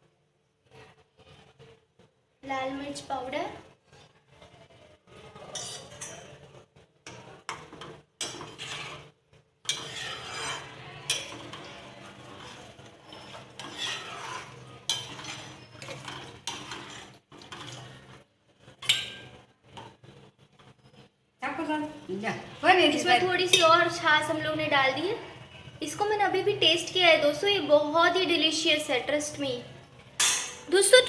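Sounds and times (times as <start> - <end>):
spoon stirring and scraping a pot: 3.7 - 21.2, 29.9 - 30.7.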